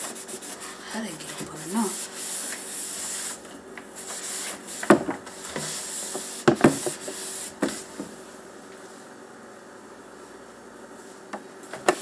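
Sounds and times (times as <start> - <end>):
rag scrubbing inside fridge: 0.0 - 8.2
objects knocking against fridge shelves: 4.8 - 5.7, 6.4 - 7.0.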